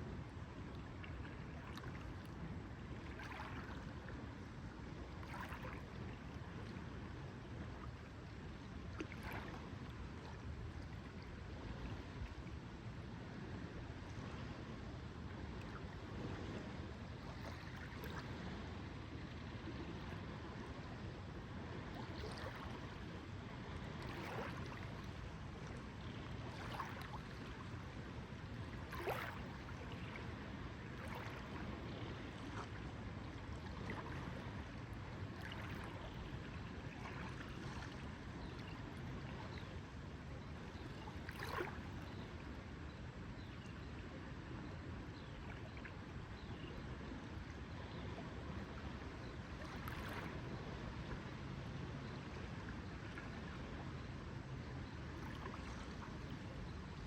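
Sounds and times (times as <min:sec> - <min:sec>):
lake water lapping: 0:01.0 - 0:04.3, 0:04.9 - 0:06.9, 0:07.5 - 0:12.1, 0:15.5 - 0:18.7, 0:21.8 - 0:39.7, 0:40.6 - 0:42.4, 0:47.8 - 0:51.1.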